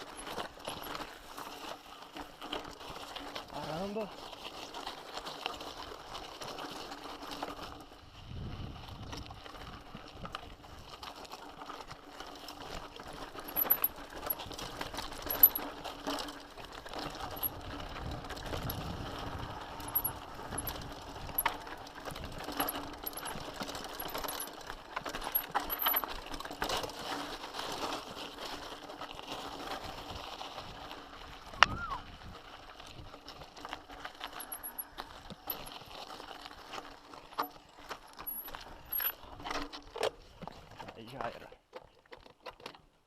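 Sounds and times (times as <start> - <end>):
bike chain and frame rattling: 0.0 - 41.1
tyres rolling: 11.4 - 30.5.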